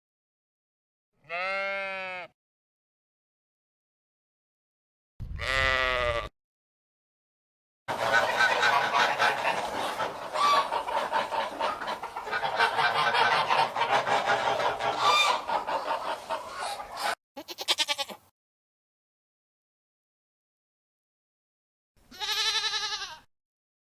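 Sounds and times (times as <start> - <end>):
short bleat: 1.2 - 2.4, 5.3 - 6.3, 17.4 - 18.3, 22.1 - 23.3
chickens clamouring: 7.9 - 17.2.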